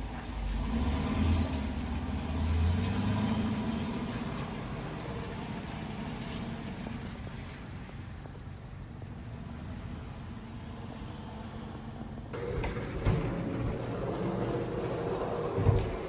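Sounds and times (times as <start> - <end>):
vehicle engine humming: 9.8 - 16.0.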